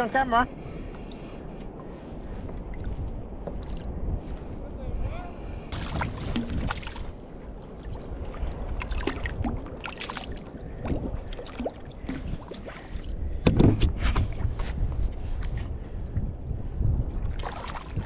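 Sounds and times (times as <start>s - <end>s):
wind rumble on microphone: 0.0s - 18.0s
water splashing: 5.7s - 13.4s, 17.3s - 18.0s
small knocks on kayak: 13.4s - 14.3s.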